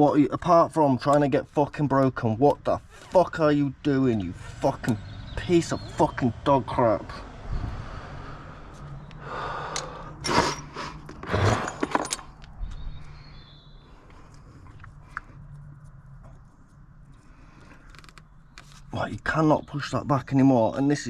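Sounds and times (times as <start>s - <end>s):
person breathing heavily: 7.5s - 11.6s
clicks and rattles of parts: 9.1s - 13.1s.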